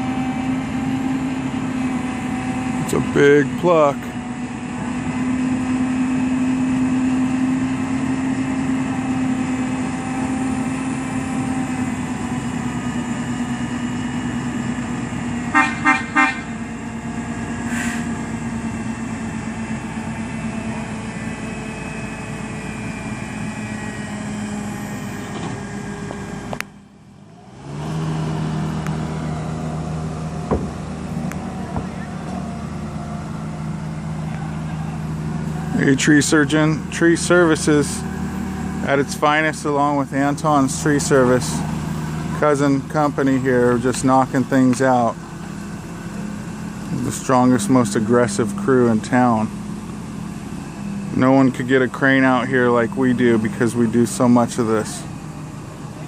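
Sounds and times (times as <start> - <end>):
heavy equipment engine running: 0.0 - 56.0
short horn toots: 15.5 - 16.5.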